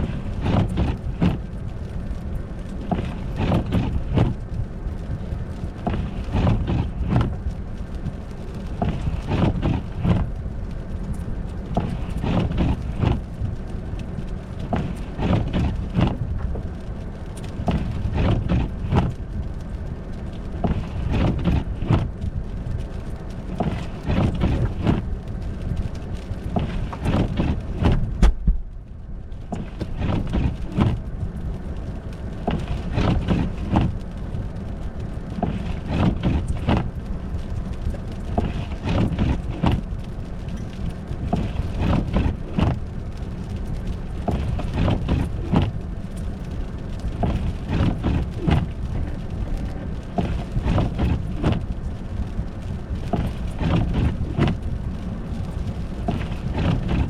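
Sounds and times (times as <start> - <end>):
wind rumble on microphone: 0.0 - 57.0.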